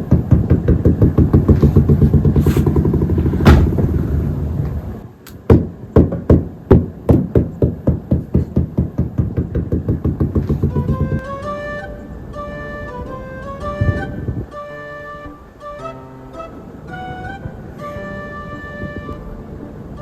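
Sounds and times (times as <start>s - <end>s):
rumbling hum: 1.8s - 5.0s
rapid regular knocking: 2.0s - 4.4s.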